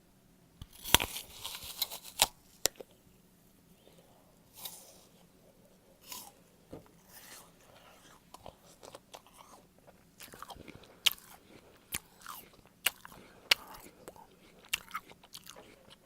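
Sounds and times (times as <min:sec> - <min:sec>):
apple crunching: 0:00.6 - 0:03.0, 0:04.5 - 0:05.3, 0:06.0 - 0:16.0.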